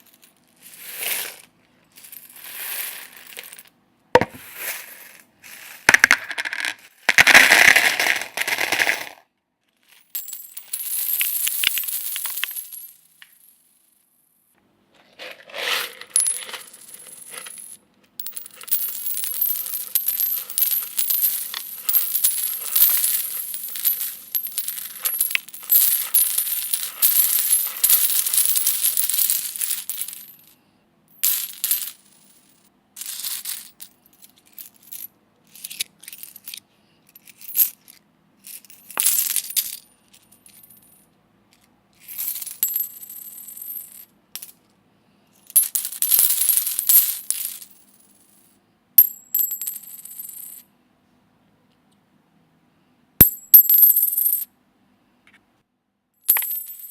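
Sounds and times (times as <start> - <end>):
coins jingling: 10.0 - 13.0, 15.4 - 30.4, 31.2 - 32.2, 33.0 - 36.6, 37.2 - 37.9, 45.5 - 47.8.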